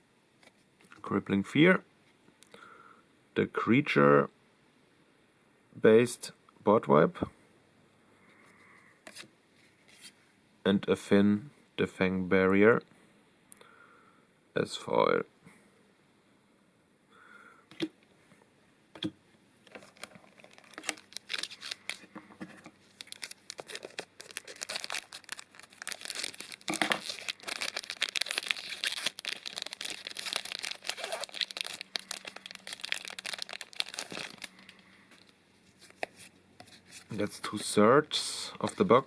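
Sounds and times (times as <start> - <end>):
foil wrapper crinkling and tearing: 19.7 - 37.2.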